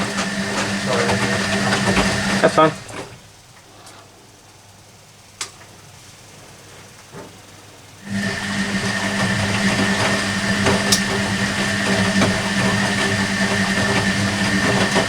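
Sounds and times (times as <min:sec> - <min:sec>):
washing machine motor humming: 0:00.0 - 0:03.5, 0:07.0 - 0:15.0.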